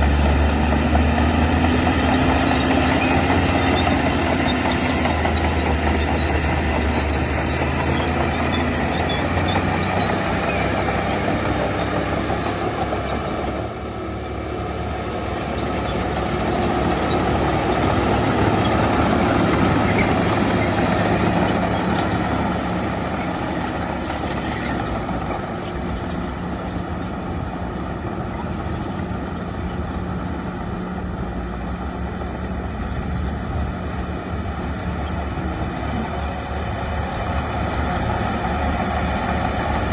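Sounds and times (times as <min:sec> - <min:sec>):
bulldozer diesel engine running: 0:00.0 - 0:39.9.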